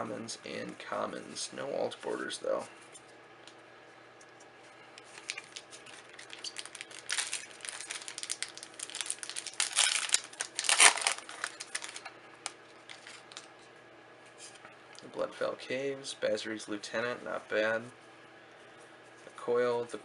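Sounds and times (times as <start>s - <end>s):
plastic wrapper crinkling: 5.0s - 13.6s.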